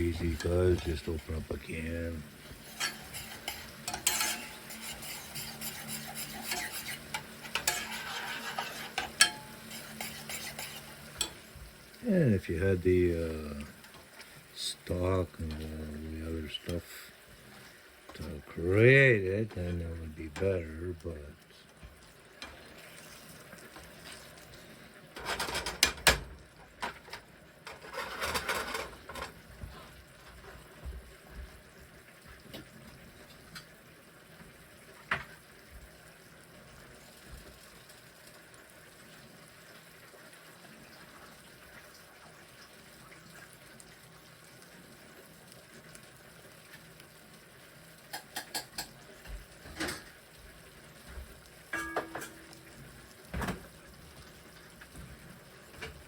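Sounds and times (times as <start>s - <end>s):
pots and utensils clinking: 0.0s - 11.8s, 25.2s - 29.4s, 48.0s - 50.2s, 51.6s - 53.8s
faint steady hiss: 0.0s - 56.0s.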